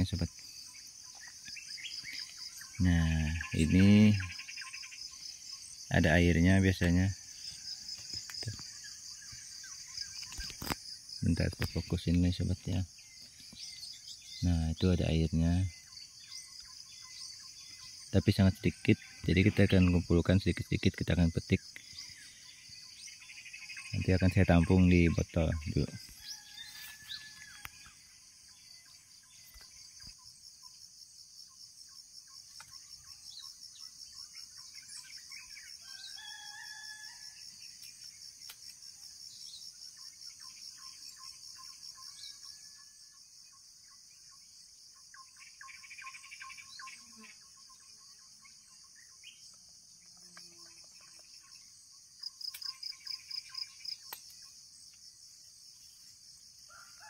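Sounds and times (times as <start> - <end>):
bird chirps and calls: 0.0 - 30.8, 31.5 - 37.0, 44.9 - 49.6
high-pitched insect drone: 0.0 - 57.0.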